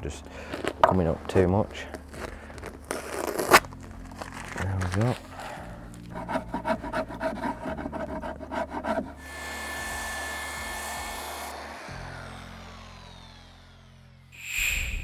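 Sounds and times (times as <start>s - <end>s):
rubbing strokes on wood: 6.0s - 9.2s
electric motor whirring: 9.1s - 15.0s.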